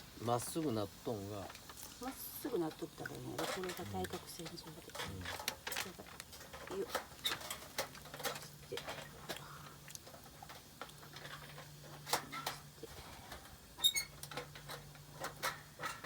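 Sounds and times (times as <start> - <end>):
metal plates clicking: 13.3 - 16.0.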